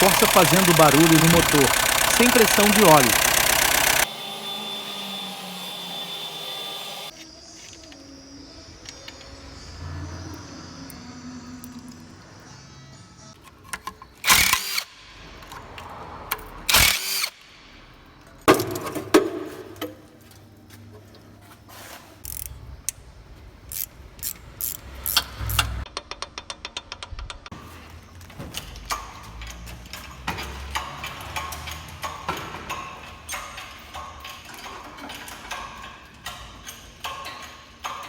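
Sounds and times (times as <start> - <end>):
engine clicks and quick ticks: 0.0 - 4.1
car engine loud bursts: 0.0 - 7.1.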